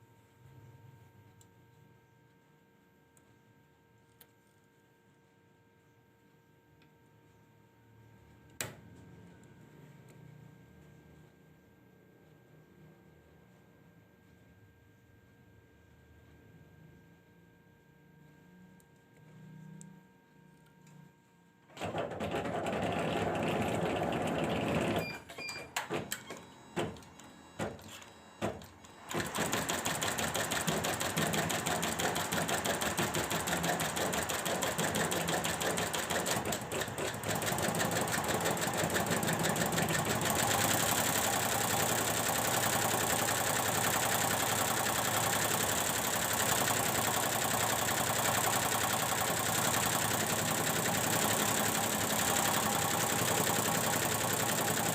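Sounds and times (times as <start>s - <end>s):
embroidery machine stitching: 21.7s - 25.2s, 28.6s - 54.9s.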